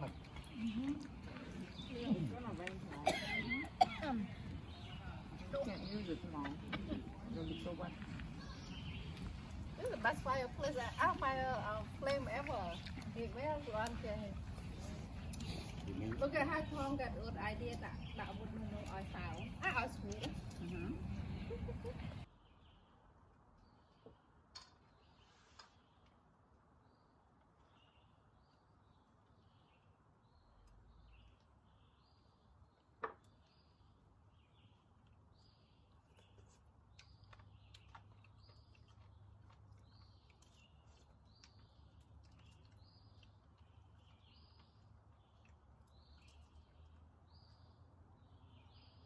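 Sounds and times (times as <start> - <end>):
birds chirping: 0.0 - 22.9.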